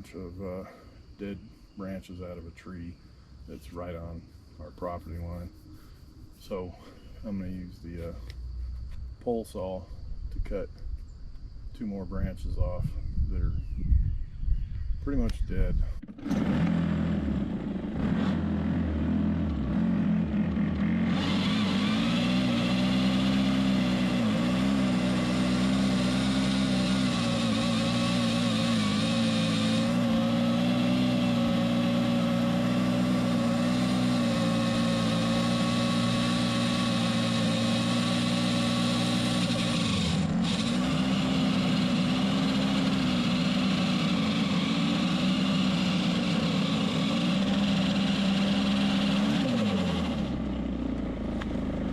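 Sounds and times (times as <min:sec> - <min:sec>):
pole saw engine revving: 0:16.0 - 0:51.9.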